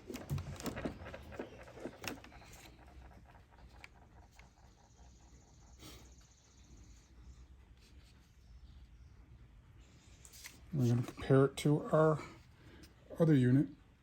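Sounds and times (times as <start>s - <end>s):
plastic clicks and scraping: 0.0s - 4.6s.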